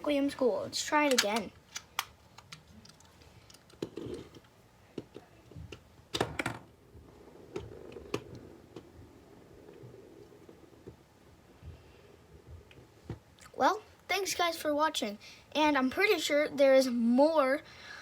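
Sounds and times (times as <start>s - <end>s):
plastic toy clicks and taps: 1.0s - 4.0s
spinning top whirring: 6.4s - 12.8s.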